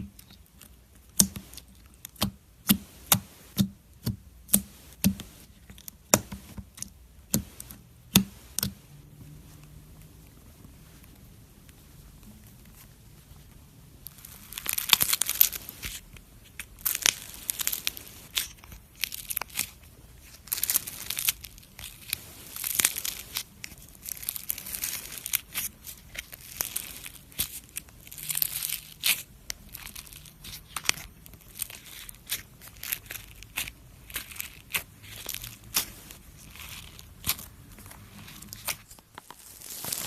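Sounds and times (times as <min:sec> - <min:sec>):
slime crackling and crinkling: 0:10.0 - 0:40.0.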